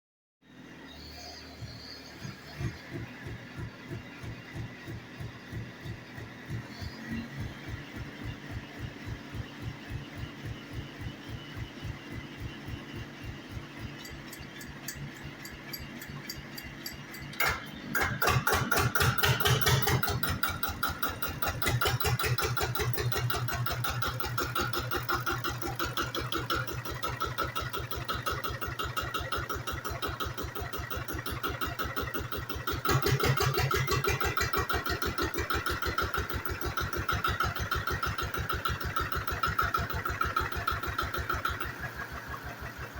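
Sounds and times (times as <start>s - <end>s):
diesel tractor engine thumping: 2.8s - 42.9s
engine catching with sharp bang: 9.9s - 23.5s.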